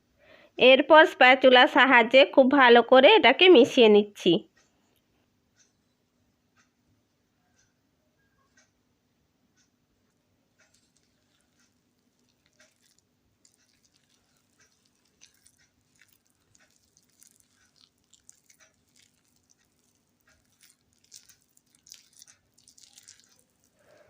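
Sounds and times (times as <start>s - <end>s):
spatula scraping batter in bowl: 10.6s - 24.0s.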